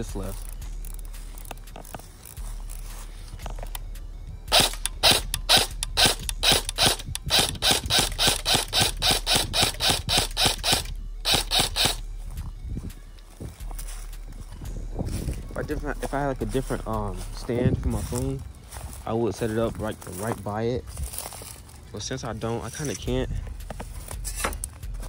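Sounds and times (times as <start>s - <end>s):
airsoft gun firing rapid shots: 4.5s - 12.0s.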